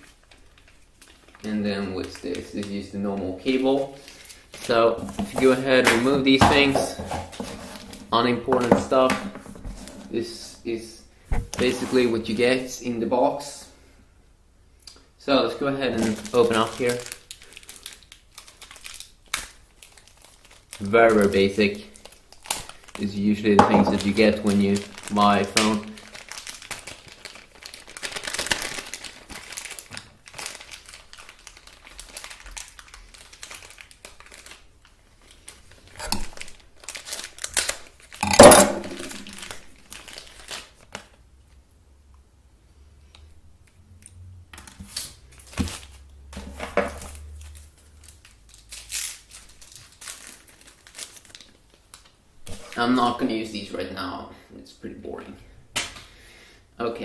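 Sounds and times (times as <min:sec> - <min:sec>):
plastic packaging crinkling: 0:00.0 - 0:10.5, 0:15.8 - 0:41.2, 0:44.6 - 0:53.1.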